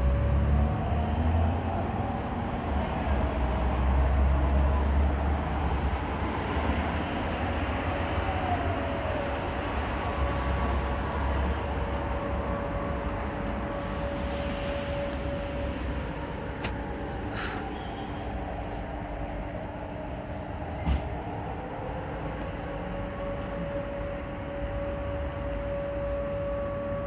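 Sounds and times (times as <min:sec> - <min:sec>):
faint long tone: 0:07.7 - 0:27.0.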